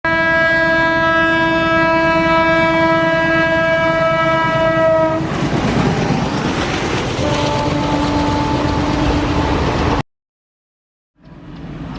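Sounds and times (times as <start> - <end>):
locomotive horn: 0.1 - 5.3, 7.2 - 10.0
train rushing rumble: 0.1 - 10.0, 11.2 - 11.9.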